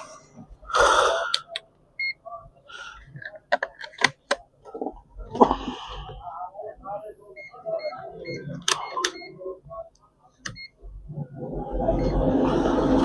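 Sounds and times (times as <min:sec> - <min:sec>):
phone and tools clicking: 0:03.2 - 0:04.9, 0:08.3 - 0:09.4
high beep: 0:11.8 - 0:12.6.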